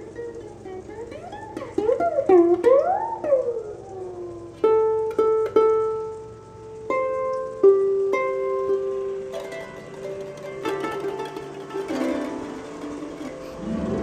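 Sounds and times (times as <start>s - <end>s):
sliding wavering pitch glide: 0.0s - 7.2s, 8.2s - 14.0s
plucked string music: 0.0s - 14.0s.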